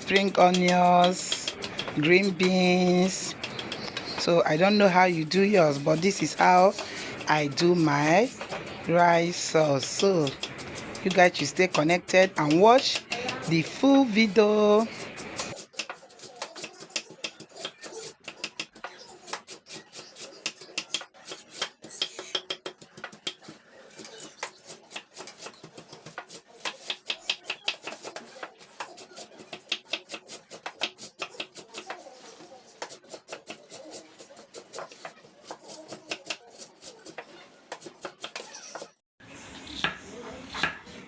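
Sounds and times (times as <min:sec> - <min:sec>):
knife chopping on a cutting board: 0:00.1 - 0:02.0, 0:10.0 - 0:14.1, 0:14.9 - 0:38.9, 0:39.8 - 0:41.0.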